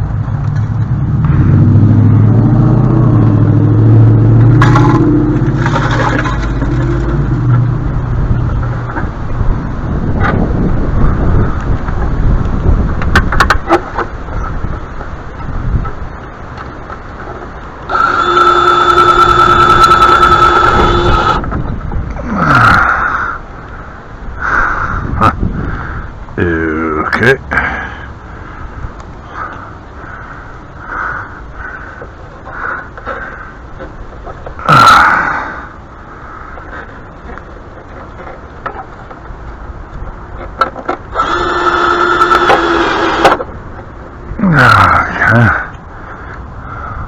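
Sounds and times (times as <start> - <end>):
small motor running with ticking: 17.9 - 21.5, 41.1 - 43.4.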